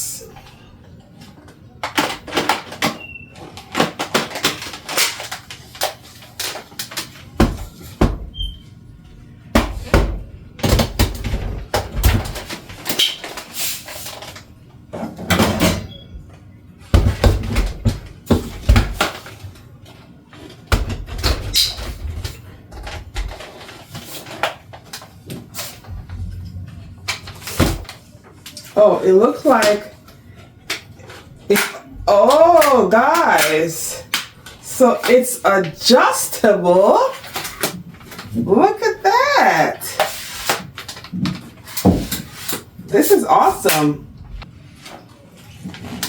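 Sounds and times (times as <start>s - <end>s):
plastic parts clicking and knocking: 1.8s - 7.6s
plastic squeaks: 2.7s - 3.7s, 8.3s - 8.6s, 12.9s - 13.4s.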